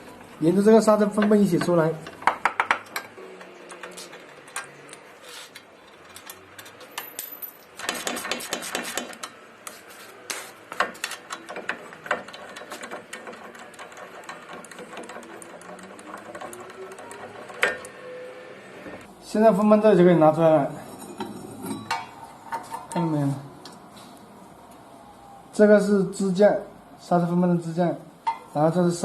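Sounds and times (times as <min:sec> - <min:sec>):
metal tools clinking: 0:05.8 - 0:07.8.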